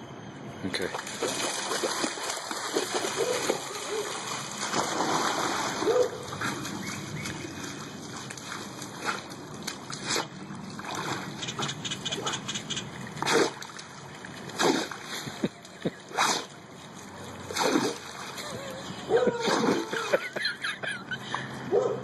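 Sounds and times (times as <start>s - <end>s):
short sharp splashes: 0.8s - 15.4s, 17.5s - 18.5s
water running and splashing: 1.0s - 11.6s.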